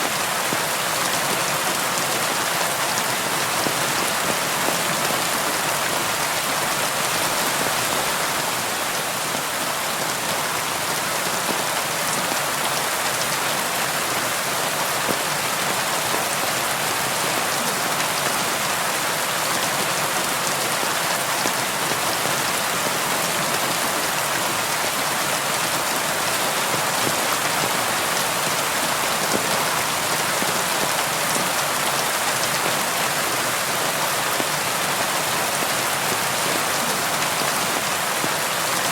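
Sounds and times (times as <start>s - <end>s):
rain on a window: 0.0s - 38.9s.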